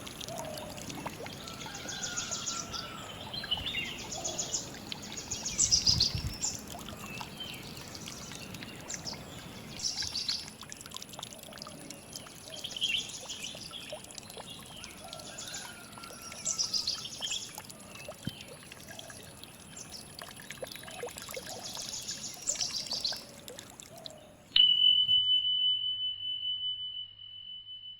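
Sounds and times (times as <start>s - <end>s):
songbirds trilling: 0.0s - 24.6s
lower bird chirps: 20.7s - 25.2s.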